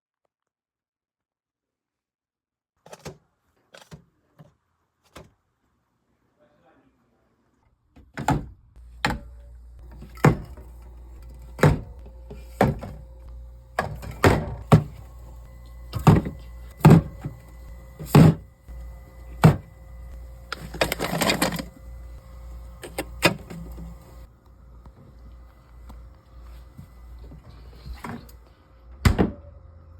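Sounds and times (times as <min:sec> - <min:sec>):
items knocking into a fridge: 0:08.0 - 0:13.0, 0:13.8 - 0:15.0, 0:15.9 - 0:17.4, 0:18.0 - 0:18.4, 0:19.4 - 0:19.7, 0:20.5 - 0:21.7, 0:29.0 - 0:29.4
low steady hum: 0:08.7 - 0:29.9.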